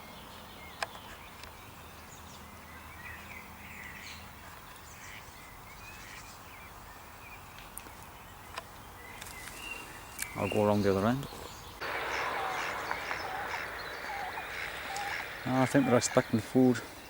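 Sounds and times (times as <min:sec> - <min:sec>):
faint high bird chirps: 0:09.0 - 0:17.0.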